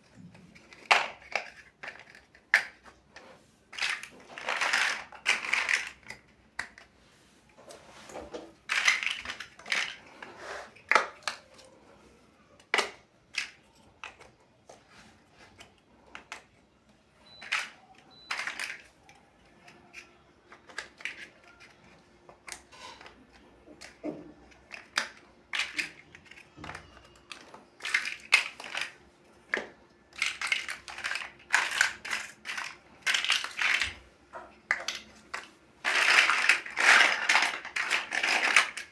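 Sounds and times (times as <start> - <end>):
plastic bricks clicking together: 0.1 - 2.9, 3.7 - 6.9, 8.6 - 10.1, 17.3 - 34.0, 34.6 - 38.9.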